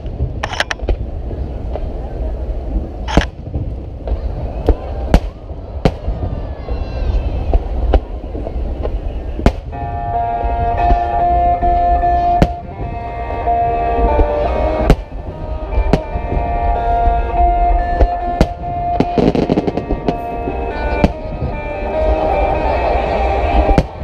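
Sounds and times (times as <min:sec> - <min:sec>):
fireworks bursting with sharp bangs: 0:00.0 - 0:24.0
low rumble of fireworks display: 0:00.0 - 0:24.0
music: 0:09.6 - 0:24.0.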